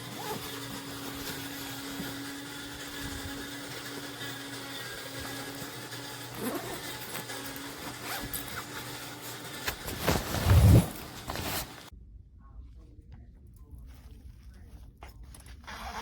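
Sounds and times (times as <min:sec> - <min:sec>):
zipper: 0:00.0 - 0:02.1, 0:06.3 - 0:11.9, 0:15.3 - 0:16.0
fabric rustling: 0:07.6 - 0:11.9.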